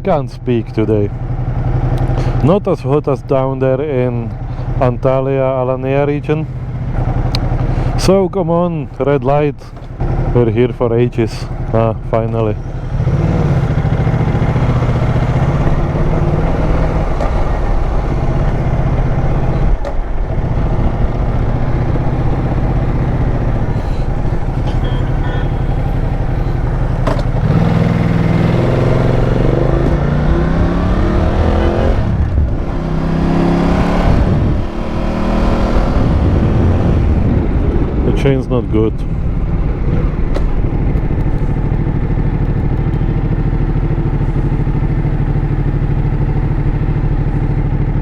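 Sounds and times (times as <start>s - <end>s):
motorcycle engine accelerating: 0.1s - 48.0s.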